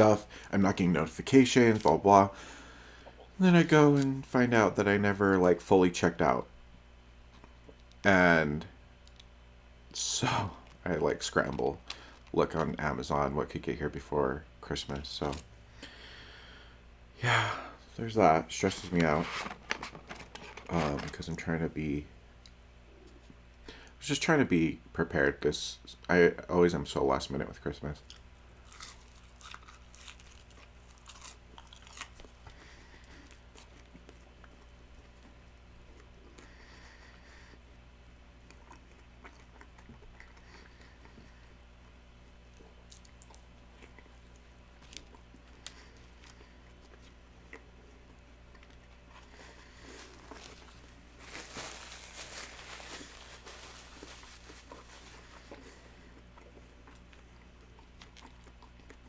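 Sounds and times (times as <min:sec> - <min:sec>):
wrapper rustling: 0:18.5 - 0:21.4, 0:49.4 - 0:55.8
person chewing food: 0:28.1 - 0:59.0
mouth clicks and chewing: 0:38.4 - 0:41.3.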